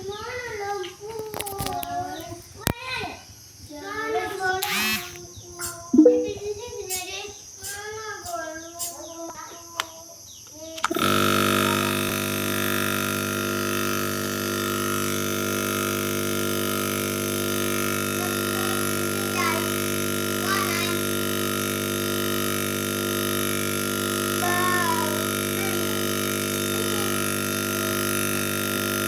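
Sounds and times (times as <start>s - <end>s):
machine hum with hiss: 10.9s - 29.0s.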